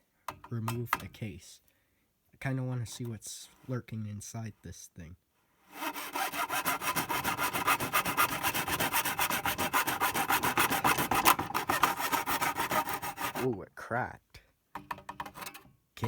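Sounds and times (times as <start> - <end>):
hand saw cutting plastic: 5.7 - 13.6, 15.2 - 15.6.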